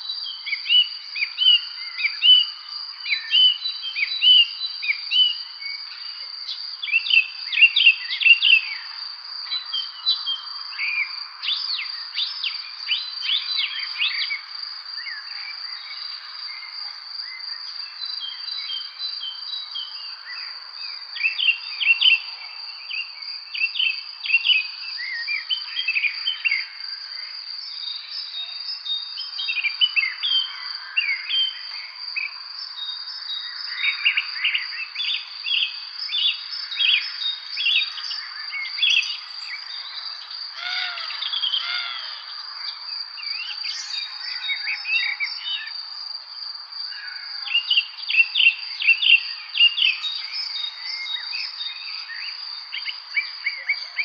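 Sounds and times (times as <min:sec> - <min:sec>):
songbirds chirping and singing: 0:00.0 - 0:54.0
high insect trill: 0:32.5 - 0:53.9.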